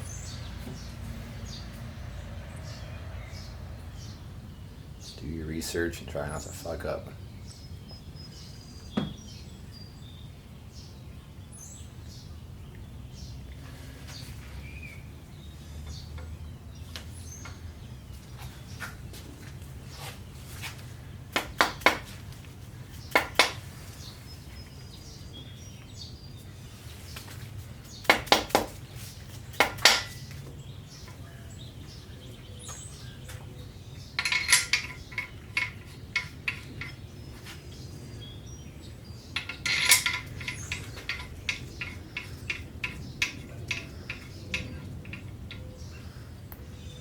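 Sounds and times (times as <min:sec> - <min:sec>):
metal engine parts clinking: 0:29.5 - 0:30.4, 0:33.9 - 0:37.4, 0:39.2 - 0:46.1.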